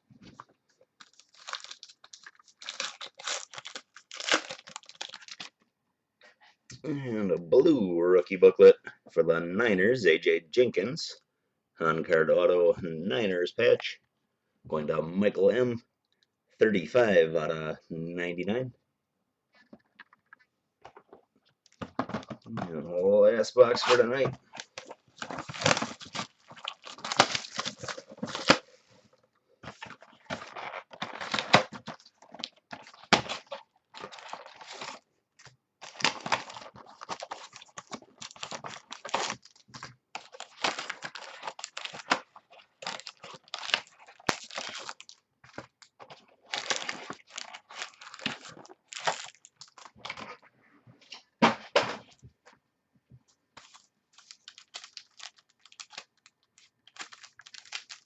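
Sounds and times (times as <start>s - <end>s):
cardboard and cards rustling: 0.2s - 5.6s, 23.6s - 52.2s, 53.6s - 58.0s
plastic wrapper tearing and crinkling: 1.0s - 5.6s, 23.8s - 28.7s, 29.7s - 35.1s, 35.8s - 50.2s, 53.6s - 58.0s.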